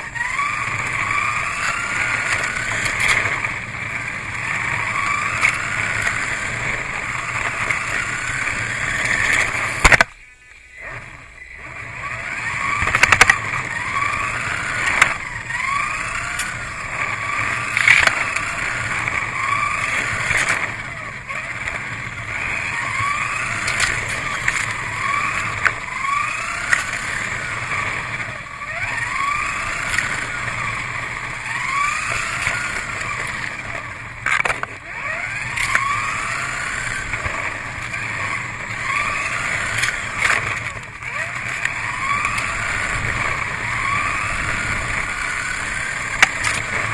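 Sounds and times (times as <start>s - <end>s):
toy car electric motor whining: 0.0s - 10.0s, 10.6s - 46.9s
sharp clicks: 17.7s - 19.2s, 45.4s - 46.9s.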